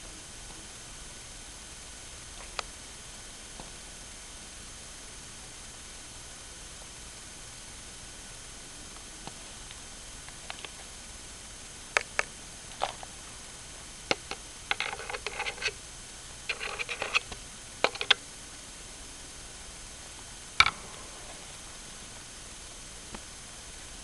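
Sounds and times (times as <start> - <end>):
budgie clicking: 14.1 - 15.8, 16.5 - 18.2.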